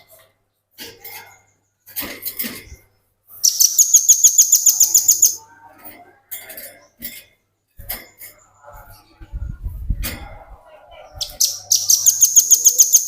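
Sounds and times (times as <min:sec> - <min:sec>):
bird rattling trill: 0:03.4 - 0:05.4, 0:11.2 - 0:13.0
bird sharp high chips: 0:03.4 - 0:05.4, 0:11.2 - 0:13.0.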